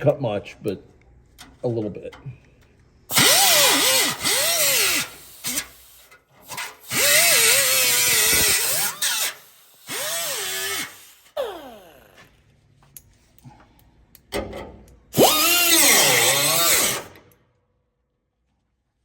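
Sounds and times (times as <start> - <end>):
power cutting tool motor: 3.1 - 5.9, 6.5 - 12.2, 15.2 - 17.2.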